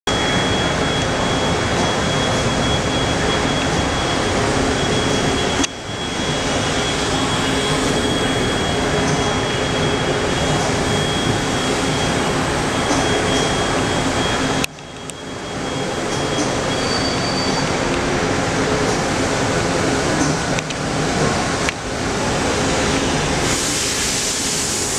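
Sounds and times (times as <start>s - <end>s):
faint high whine: 0.1s - 19.5s
machining center rushing noise: 0.1s - 24.9s.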